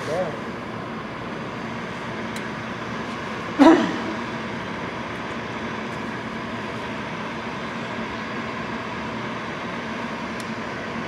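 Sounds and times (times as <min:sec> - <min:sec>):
faint hum: 0:00.0 - 0:11.0
gas furnace whirring: 0:00.0 - 0:11.0.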